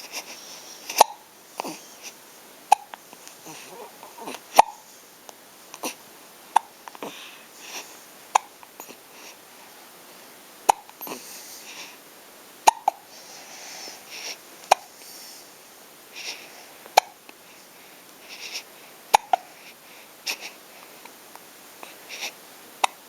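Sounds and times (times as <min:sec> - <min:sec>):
short sharp hiccups: 0:10.7 - 0:11.2, 0:12.7 - 0:13.0.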